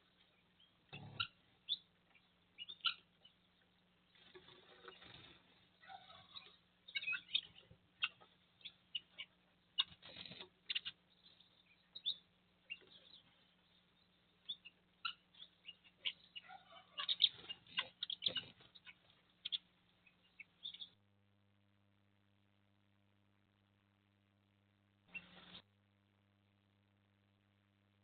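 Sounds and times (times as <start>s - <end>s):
small birds chirping: 0.0s - 21.0s, 25.0s - 25.7s
faint steady hum: 0.0s - 28.0s.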